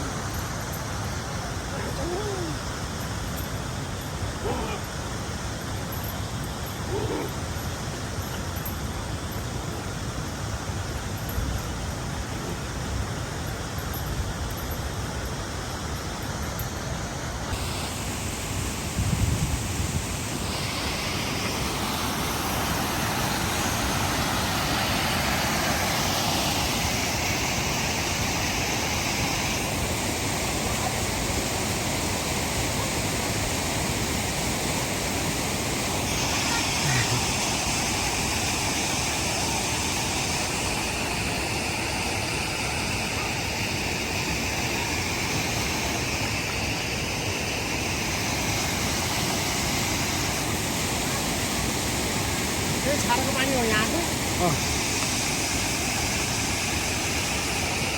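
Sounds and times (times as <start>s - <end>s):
waterfall rushing: 15.4s - 57.9s.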